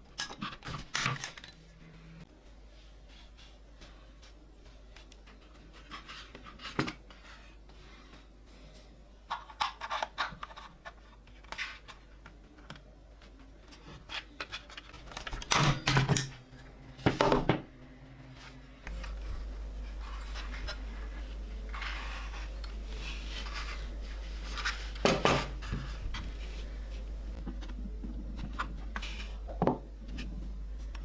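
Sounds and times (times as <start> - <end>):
low hum: 17.7 - 31.0.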